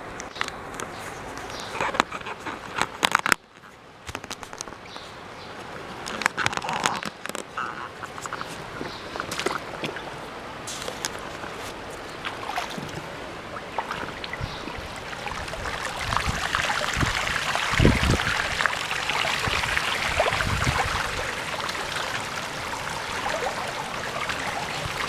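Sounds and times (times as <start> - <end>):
floodwater sloshing and splashing: 5.7 - 25.0.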